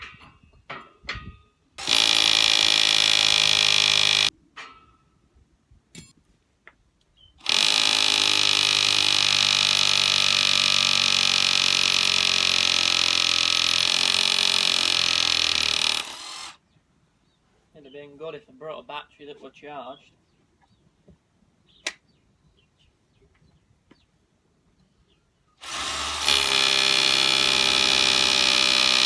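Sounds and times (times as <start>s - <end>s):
electric tool motor running: 1.8s - 4.3s, 7.4s - 16.6s, 25.6s - 29.0s.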